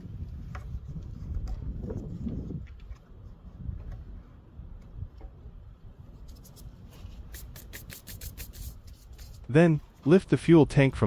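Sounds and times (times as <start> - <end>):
low rub: 6.1 - 10.2.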